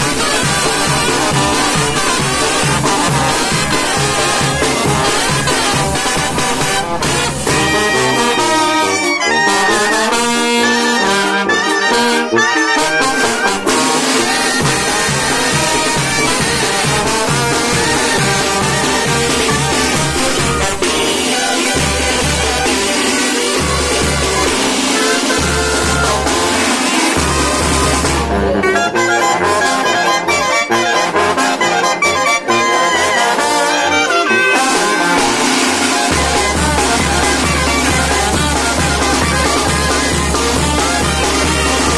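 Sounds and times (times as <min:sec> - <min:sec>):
brass band playing: 0:00.0 - 0:41.9
electronic dance music: 0:12.5 - 0:29.0, 0:34.4 - 0:41.9.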